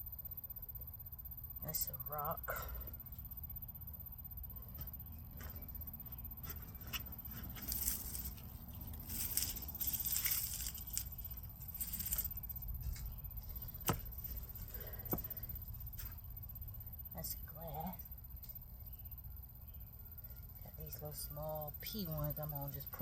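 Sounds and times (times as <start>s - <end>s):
hands scraping through soil: 6.4s - 15.4s.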